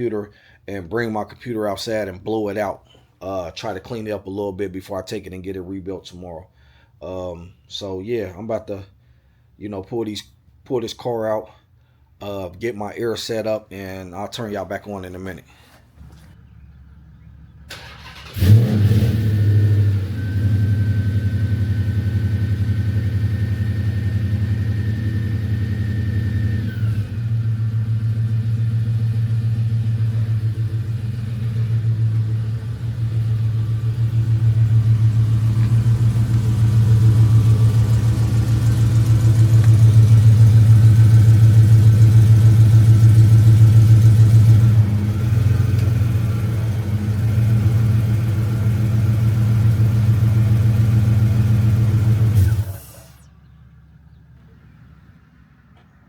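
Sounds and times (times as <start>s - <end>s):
car engine deep pulsing exhaust: 18.4s - 52.7s.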